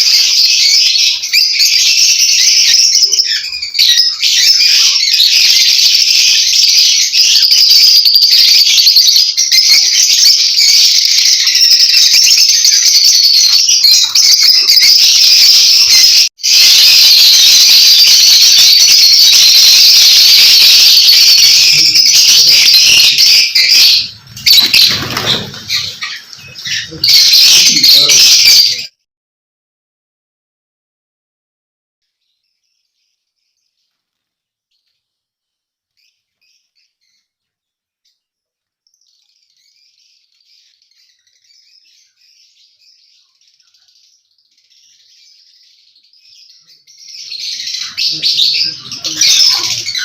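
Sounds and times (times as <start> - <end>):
flock of birds chattering: 0.0 - 28.9, 38.9 - 50.0.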